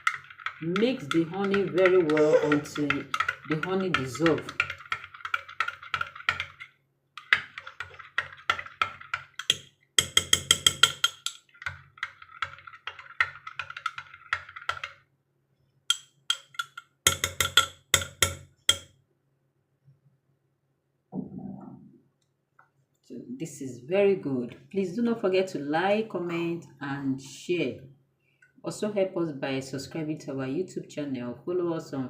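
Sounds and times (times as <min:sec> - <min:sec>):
spoon clinking against container: 0:09.4 - 0:11.5, 0:15.9 - 0:18.9.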